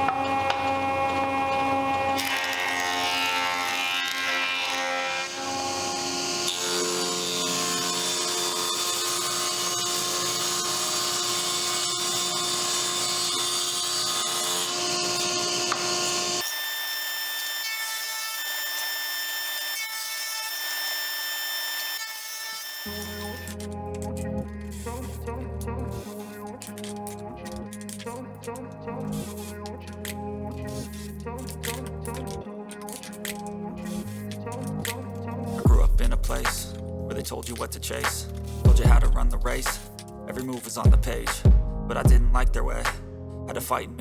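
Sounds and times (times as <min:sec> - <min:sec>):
power tool motor whine: 0:00.0 - 0:23.7
drilling and sawing wood: 0:00.0 - 0:43.1.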